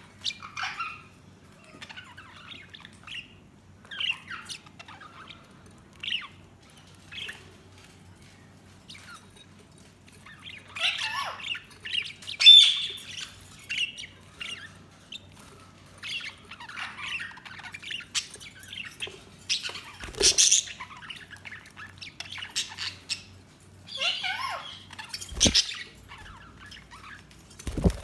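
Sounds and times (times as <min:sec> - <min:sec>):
budgerigars chirping and warbling: 0:00.0 - 0:07.9, 0:08.6 - 0:28.0
bird squawk: 0:24.0 - 0:26.4.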